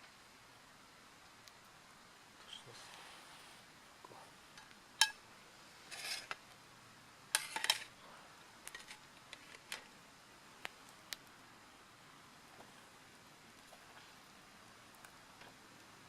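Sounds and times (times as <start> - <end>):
rustle: 0.0 - 16.0
metal on metal clatter: 5.9 - 6.4, 7.3 - 7.9.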